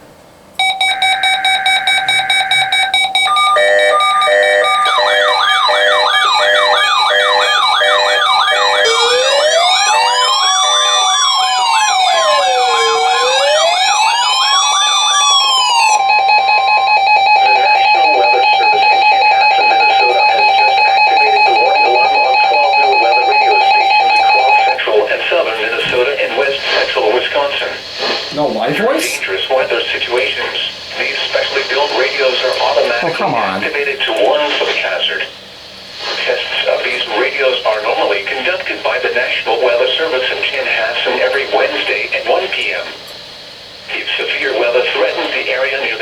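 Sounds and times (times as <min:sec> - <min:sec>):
electronic beeping tones: 0:00.6 - 0:11.3, 0:17.2 - 0:24.8
siren-like wail: 0:00.6 - 0:25.0.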